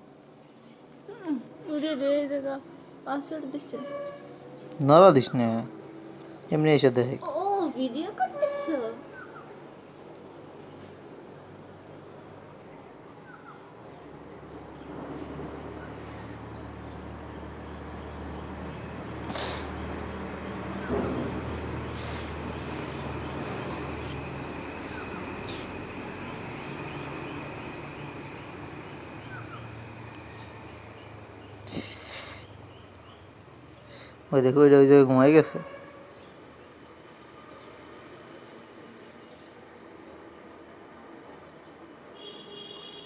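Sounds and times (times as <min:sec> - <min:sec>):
low mechanical rumble: 0:14.4 - 0:33.8.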